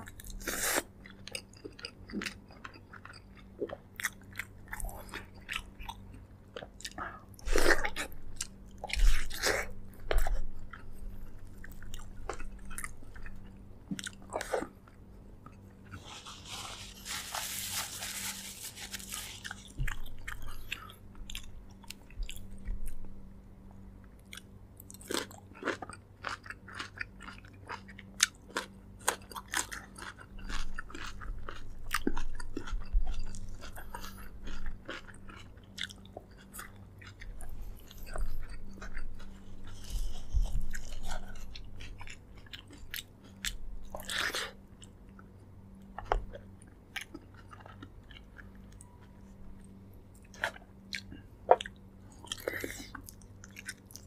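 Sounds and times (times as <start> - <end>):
chewing with wet mouth clicks: 24.1 - 54.0.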